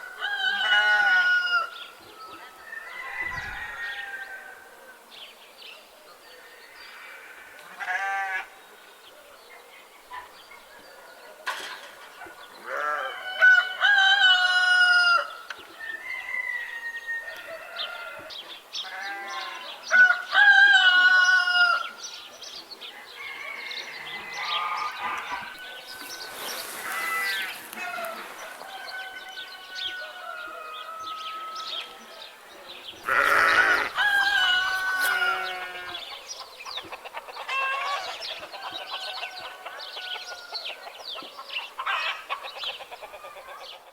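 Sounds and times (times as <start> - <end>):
livestock calling: 23.2 - 32.0, 33.0 - 39.7.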